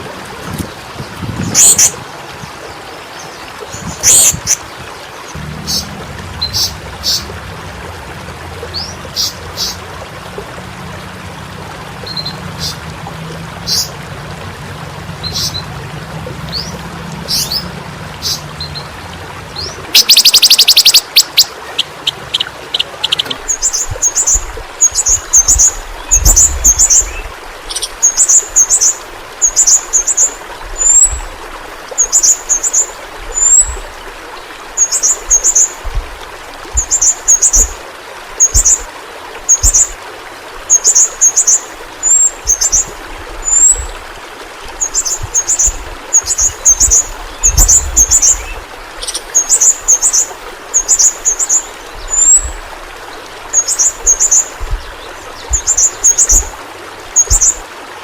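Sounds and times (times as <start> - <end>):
bird calling: 19.6 - 27.1, 53.6 - 56.5
rapid ticking trill: 20.0 - 23.2.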